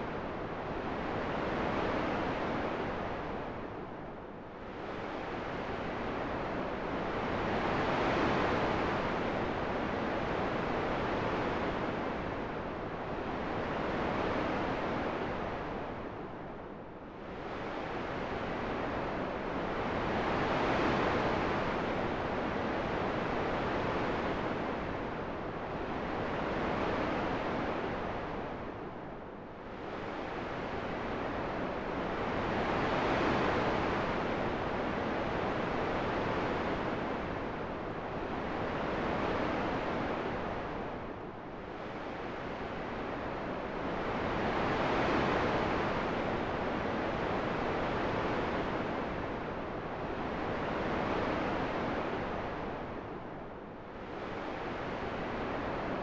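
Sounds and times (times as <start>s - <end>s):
wind rushing in gusts: 29.6s - 42.7s.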